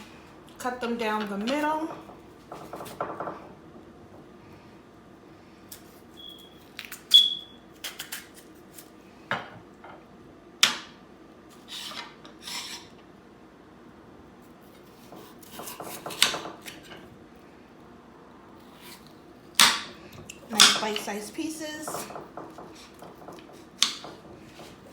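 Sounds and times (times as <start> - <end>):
knife scraping: 11.6 - 13.0, 18.6 - 19.2.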